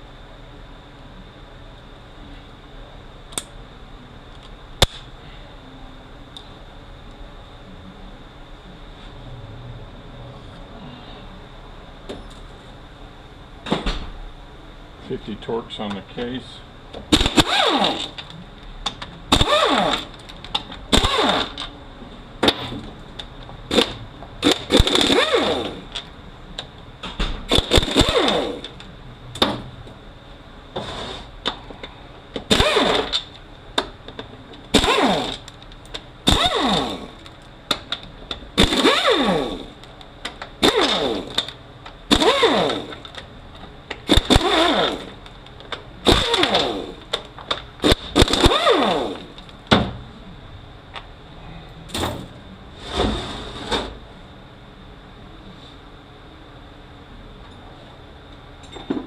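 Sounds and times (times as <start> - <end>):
power tool spinning bolts: 17.1 - 18.3, 19.3 - 21.7, 23.7 - 26.1, 27.5 - 28.8, 32.5 - 33.3, 34.7 - 35.6, 36.2 - 37.3, 38.6 - 43.2, 44.0 - 45.2, 46.0 - 47.2, 47.8 - 49.5.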